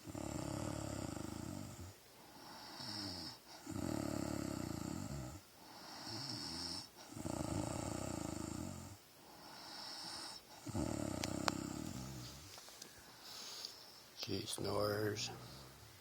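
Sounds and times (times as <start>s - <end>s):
woman snoring: 0.0s - 12.4s
breathy hissing breaths: 0.0s - 14.2s.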